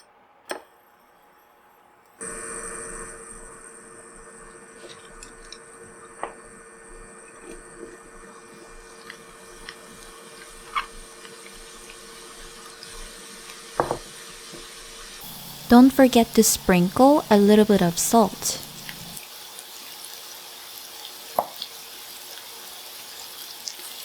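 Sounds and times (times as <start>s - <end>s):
faint sizzle of frying: 2.2s - 24.0s.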